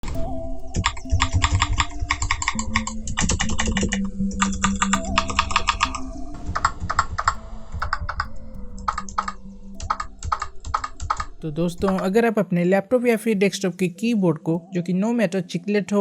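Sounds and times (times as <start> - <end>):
mechanical keyboard clicks: 0.8 - 6.0, 6.6 - 12.1.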